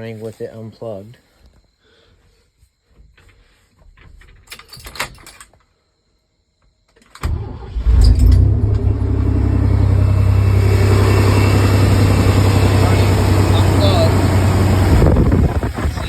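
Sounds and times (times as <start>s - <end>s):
car engine cranking and running: 7.2s - 16.0s.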